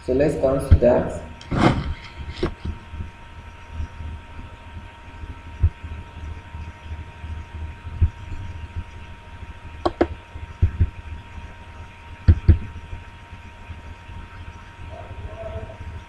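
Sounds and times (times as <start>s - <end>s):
low electrical hum: 0.0s - 16.0s
dull low thumps: 9.8s - 11.0s, 12.2s - 12.8s
computer mouse clicks: 9.9s - 10.1s.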